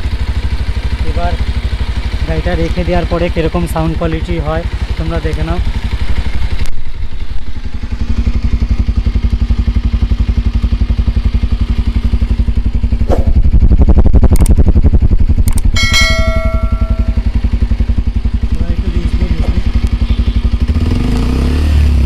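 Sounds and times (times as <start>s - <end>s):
motorcycle engine idling and revving: 0.0s - 22.0s
short high tone: 15.8s - 17.3s.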